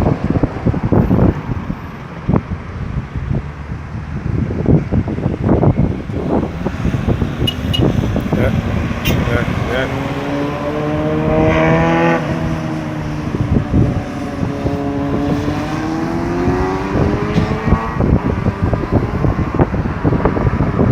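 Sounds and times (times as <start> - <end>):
wind thumps on microphone: 0.0 - 9.8, 10.8 - 20.9
vehicle engine steady note: 2.4 - 17.4.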